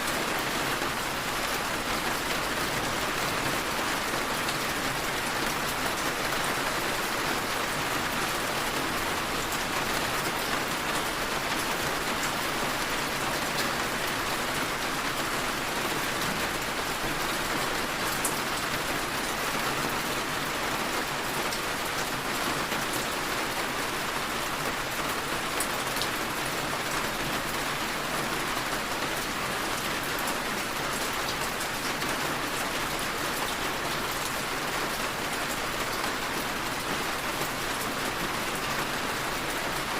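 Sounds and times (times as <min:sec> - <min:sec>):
steady rainfall: 0:00.0 - 0:39.9.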